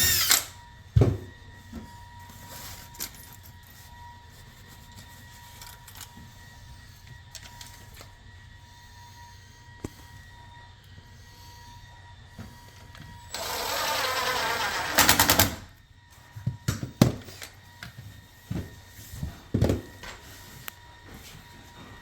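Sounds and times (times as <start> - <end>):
power drill driving a screw: 0.0 - 0.6, 13.2 - 15.7.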